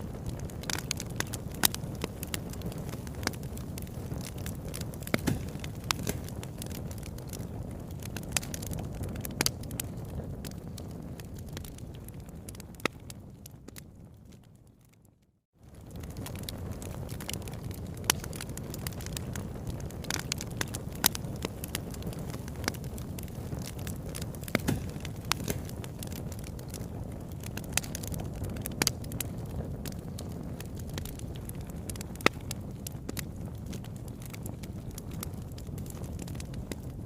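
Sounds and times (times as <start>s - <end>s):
wood fire crackling and popping: 0.0s - 37.0s.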